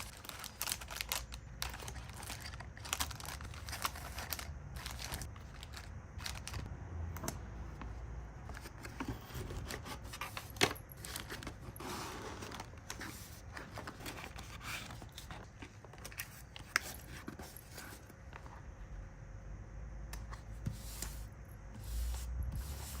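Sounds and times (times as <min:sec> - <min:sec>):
packaging rustling: 0:00.0 - 0:06.7.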